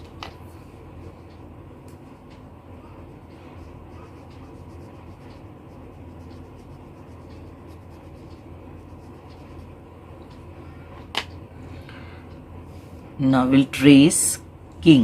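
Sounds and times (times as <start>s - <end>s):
low steady hum: 0.0s - 15.0s
colouring strokes on paper: 3.1s - 9.8s.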